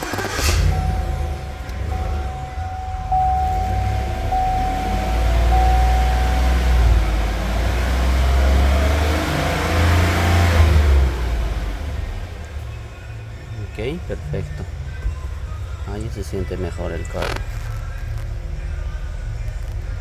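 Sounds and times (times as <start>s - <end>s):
car engine running steadily: 0.0s - 20.0s
thin steady whine: 0.1s - 7.8s.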